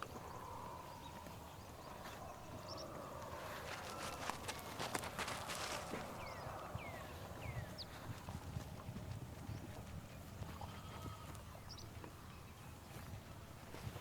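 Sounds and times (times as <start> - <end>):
animals stepping and cropping grass: 0.0 - 14.0
bird chirps: 6.1 - 8.1.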